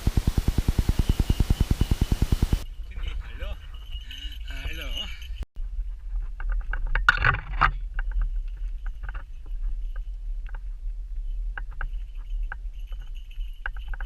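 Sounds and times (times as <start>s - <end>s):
low throbbing hum: 0.0s - 2.6s.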